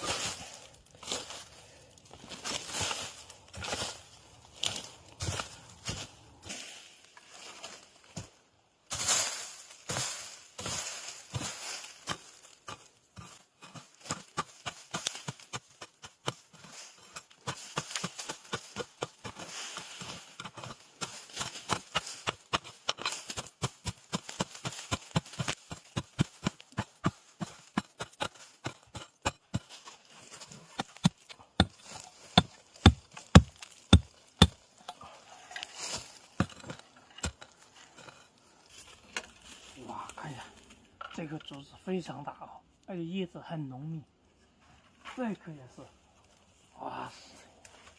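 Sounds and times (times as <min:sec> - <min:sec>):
hoe chopping into soil: 0:08.9 - 0:34.6.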